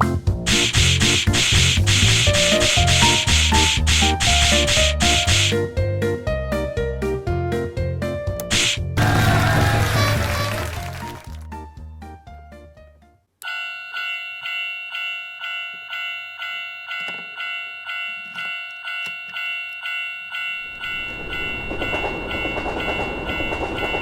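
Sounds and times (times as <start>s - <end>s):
train passing rush: 0.5s - 5.7s, 8.5s - 11.4s, 20.5s - 24.0s.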